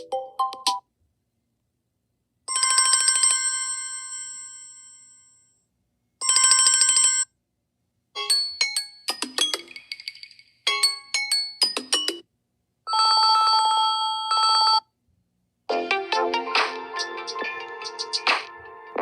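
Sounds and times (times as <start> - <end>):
ringtone melody: 0.0 - 0.8, 8.2 - 12.2, 15.7 - 19.0.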